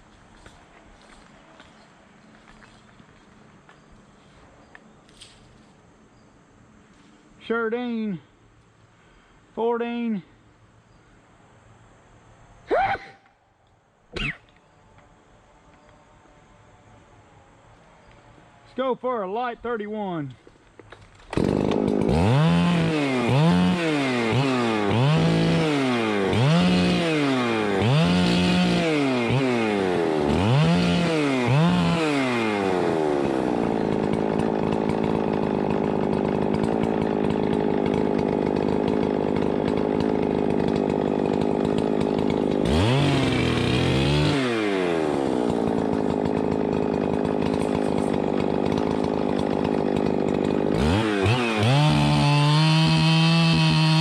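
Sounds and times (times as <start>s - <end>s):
chainsaw engine revving: 21.2s - 54.0s.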